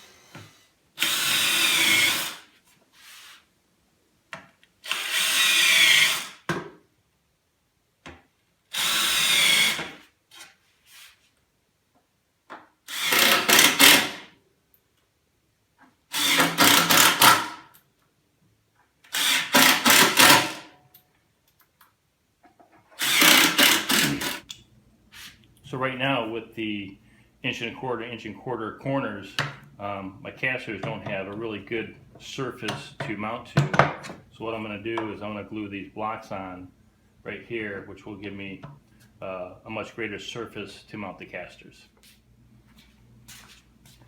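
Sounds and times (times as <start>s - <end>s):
power drill whining and rattling: 0.0s - 2.5s, 4.8s - 6.5s, 8.7s - 10.0s, 12.9s - 14.3s, 16.1s - 17.7s, 19.0s - 20.7s, 22.9s - 24.5s.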